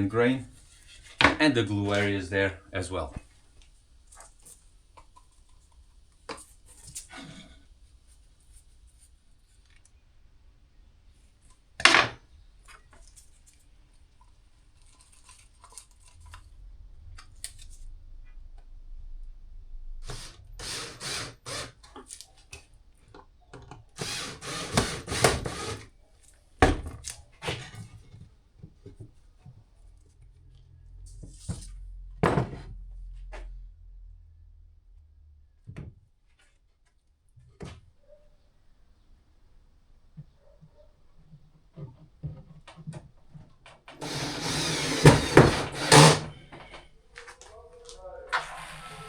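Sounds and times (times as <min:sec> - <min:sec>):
wooden knocks and clattering: 0:44.0 - 0:46.8
rattling and scraping: 0:44.0 - 0:46.9.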